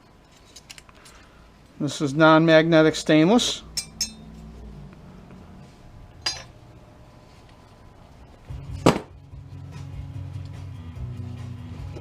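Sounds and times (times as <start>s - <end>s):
metal parts clinking: 0.0s - 1.3s, 6.2s - 6.6s
low hum: 3.6s - 12.0s
metallic clank: 3.7s - 4.5s, 6.1s - 6.6s.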